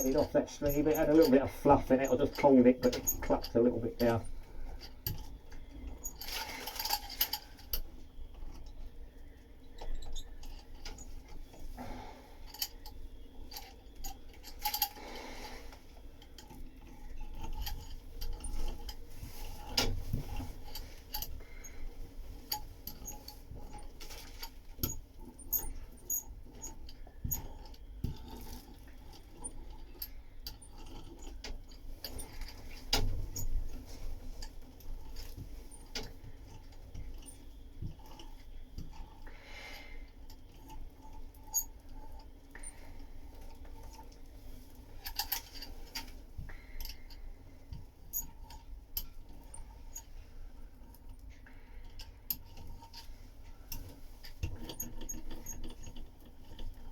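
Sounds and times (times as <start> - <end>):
laminating roller clicking: 0.0 - 4.3.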